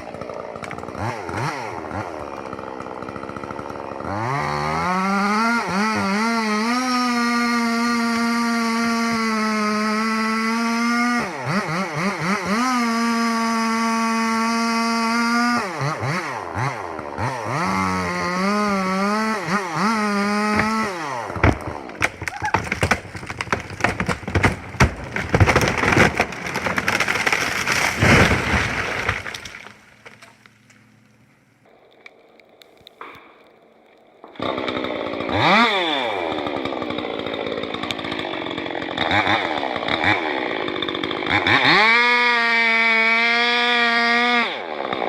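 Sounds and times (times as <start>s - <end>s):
wood cracking and crashing: 0.0s - 9.2s, 10.0s - 30.9s, 31.9s - 43.8s
chainsaw running at high revs: 0.0s - 29.6s, 34.2s - 45.0s.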